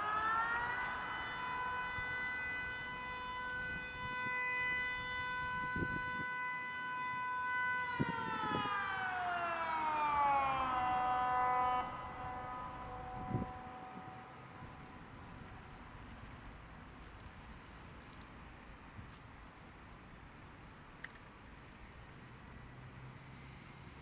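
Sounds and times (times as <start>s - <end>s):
siren steady tone: 0.0s - 16.4s.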